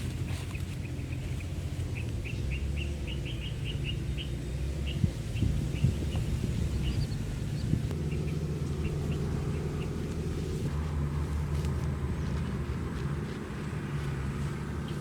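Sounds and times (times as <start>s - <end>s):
small bird chirping: 0.4s - 10.1s.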